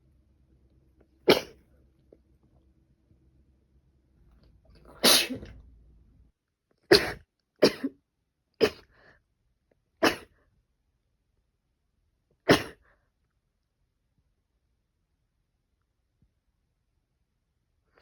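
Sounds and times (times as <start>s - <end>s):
woman coughing: 1.3s - 1.6s, 6.9s - 8.0s, 10.0s - 10.3s, 12.5s - 12.8s.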